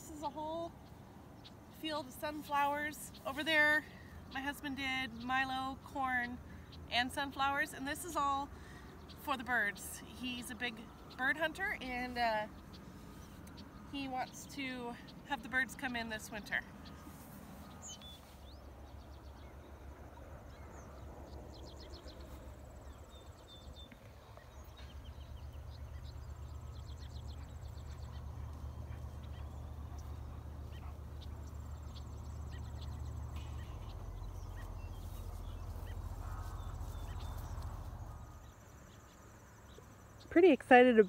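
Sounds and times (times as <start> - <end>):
bird chirps: 12.4 - 41.0.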